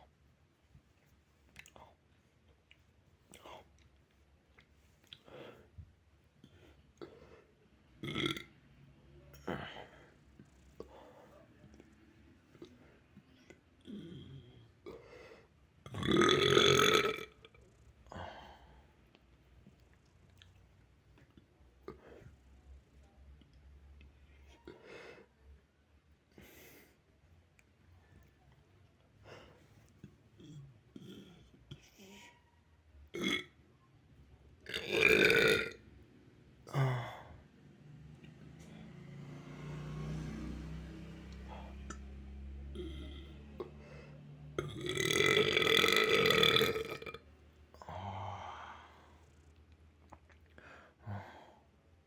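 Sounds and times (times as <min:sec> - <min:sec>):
boy burping: 0:08.0 - 0:08.5, 0:15.8 - 0:17.6, 0:33.2 - 0:33.6, 0:34.7 - 0:35.8, 0:42.7 - 0:43.7, 0:44.6 - 0:47.2.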